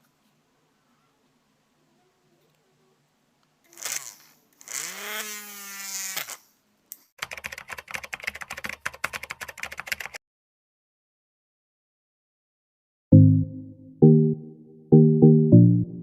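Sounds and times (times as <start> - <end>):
rapid typing clicks: 7.2 - 10.2.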